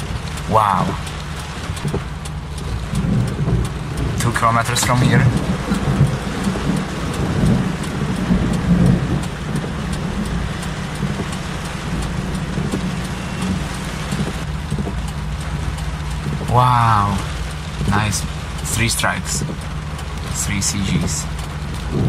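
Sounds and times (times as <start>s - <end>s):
rain falling: 0.0s - 22.0s
thunder rumbling: 1.9s - 15.0s.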